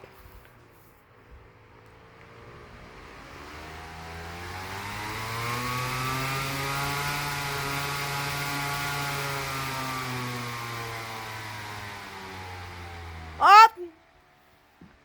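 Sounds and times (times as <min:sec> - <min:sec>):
fan blades whining: 0:02.5 - 0:13.9.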